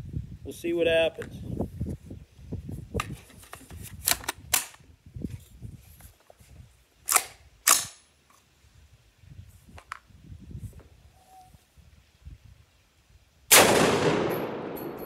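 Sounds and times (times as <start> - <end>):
rifle shots: 13.5 - 15.0.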